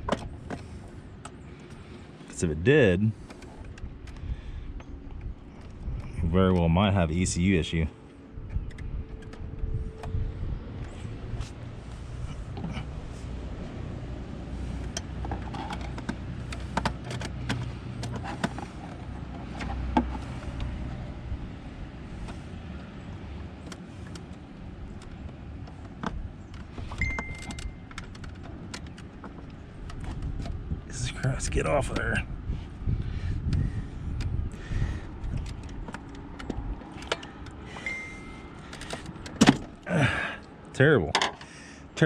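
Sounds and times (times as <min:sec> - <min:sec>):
steady low rumble: 0:00.0 - 0:42.0
hands clicking and tapping parts: 0:14.8 - 0:20.7, 0:35.3 - 0:37.9
short beep: 0:27.0 - 0:27.8, 0:37.8 - 0:38.5.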